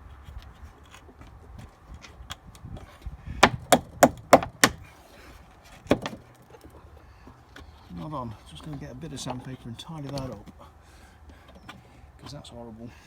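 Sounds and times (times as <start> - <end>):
sharp taps of strut on mount: 3.4 - 4.8.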